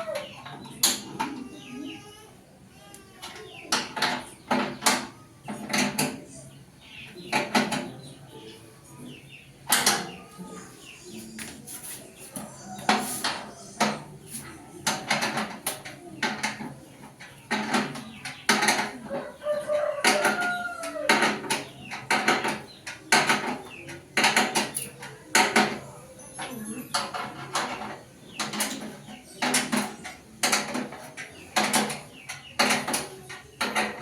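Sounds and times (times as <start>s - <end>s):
metal clanks and knocks: 3.2s - 6.4s, 7.2s - 8.3s, 9.6s - 10.4s, 12.4s - 34.0s
chicken calling: 19.0s - 21.2s.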